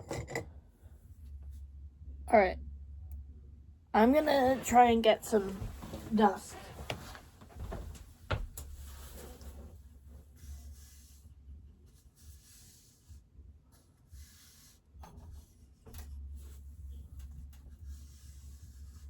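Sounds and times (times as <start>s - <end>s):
low steady hum: 0.0s - 12.6s
rustling and scratchy rubbing: 4.0s - 11.2s
soft knocks: 5.5s - 8.8s.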